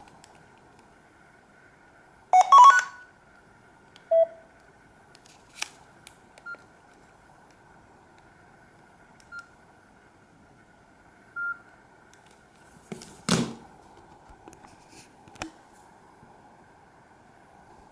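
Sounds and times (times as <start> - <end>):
phone key beeps: 2.4 - 3.0, 4.1 - 4.4.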